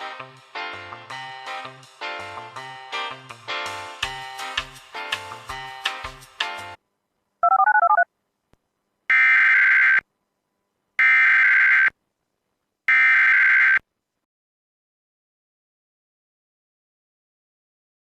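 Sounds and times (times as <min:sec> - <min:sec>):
light jazzy music: 0:00.0 - 0:06.8.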